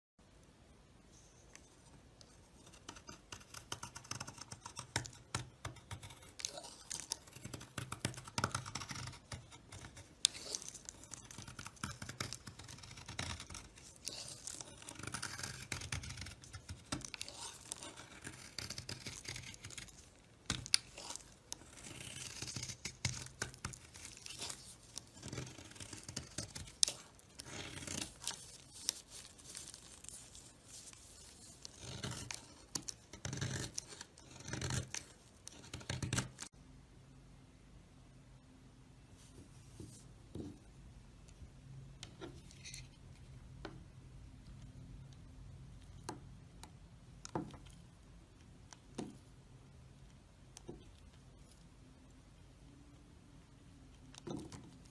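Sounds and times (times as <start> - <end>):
blade scraping soap: 2.4 - 36.5.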